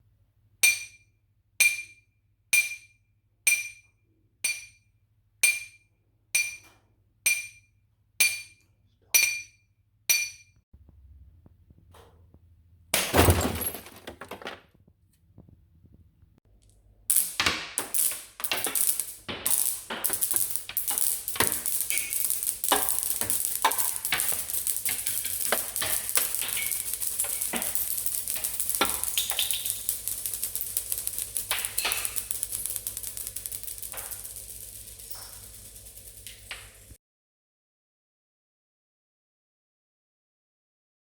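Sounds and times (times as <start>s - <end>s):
dense crackling and sizzling: 16.5s - 37.0s.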